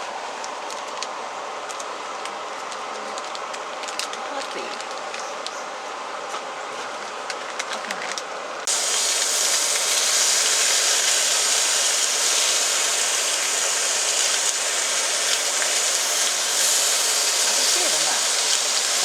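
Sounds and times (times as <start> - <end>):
loud steady hiss: 8.7 - 19.0.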